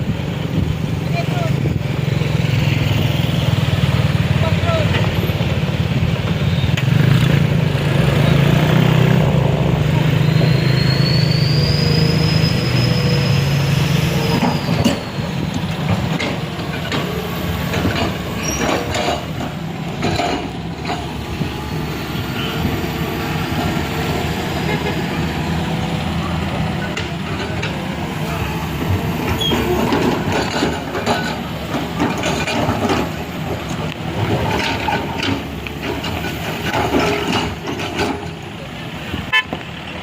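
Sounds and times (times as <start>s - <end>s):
heavy vehicle engine running: 0.0s - 40.0s
clanks and knocks: 14.3s - 21.2s, 28.8s - 38.4s.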